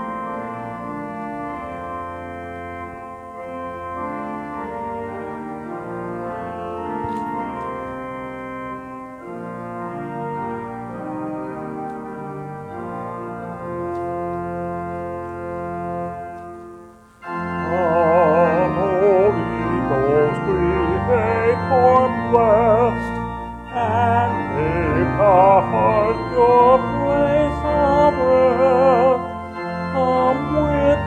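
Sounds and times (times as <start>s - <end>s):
church organ: 0.0s - 31.0s
voices singing a hymn: 17.4s - 31.0s.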